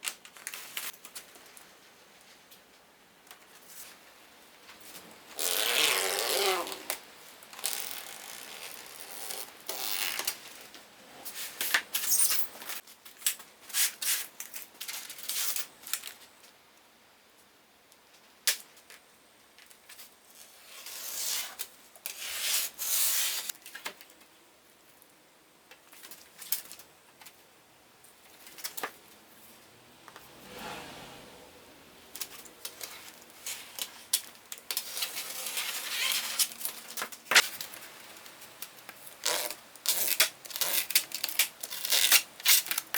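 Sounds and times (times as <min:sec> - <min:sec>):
scraping and sliding: 0:30.2 - 0:33.6.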